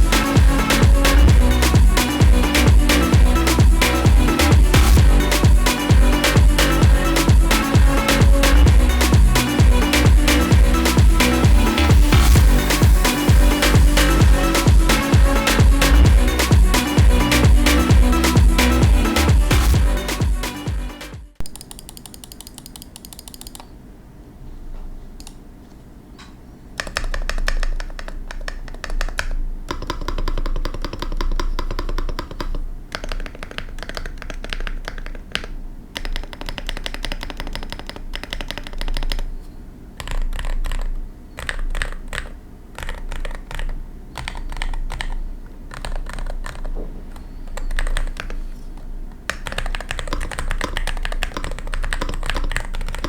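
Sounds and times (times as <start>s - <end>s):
keyboard key clicks: 21.4s - 23.7s, 26.8s - 39.3s.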